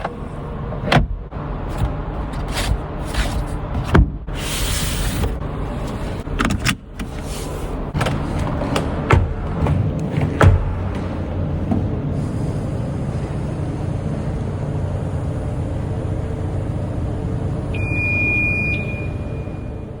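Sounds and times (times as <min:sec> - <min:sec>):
brief high tone: 0:17.7 - 0:20.0.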